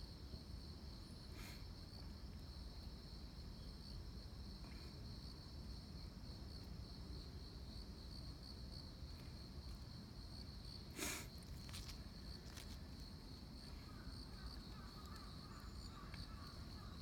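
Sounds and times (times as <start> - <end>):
crickets trilling: 0.1 - 17.0.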